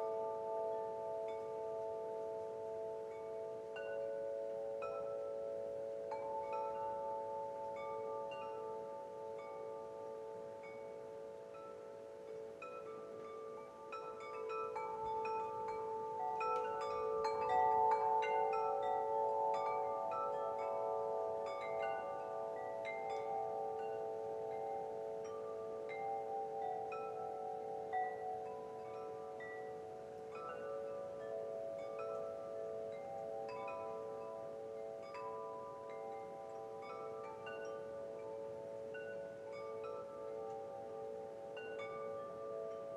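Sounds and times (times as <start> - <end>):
wind chimes ringing: 0.0 - 42.9.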